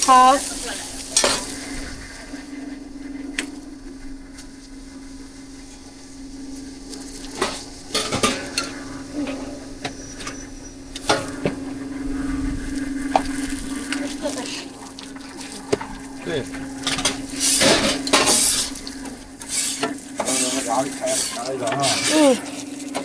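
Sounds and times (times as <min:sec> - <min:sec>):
faint sizzle: 0:00.0 - 0:23.0
steady low hum: 0:00.0 - 0:23.0
metal utensils scraping on griddle: 0:01.0 - 0:01.7, 0:07.1 - 0:11.6, 0:16.8 - 0:23.0.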